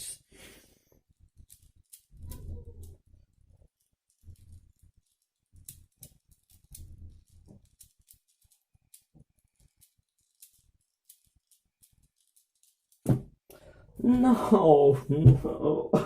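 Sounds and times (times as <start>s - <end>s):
plastic puzzle cube clicking: 1.4s - 3.0s, 3.8s - 13.1s.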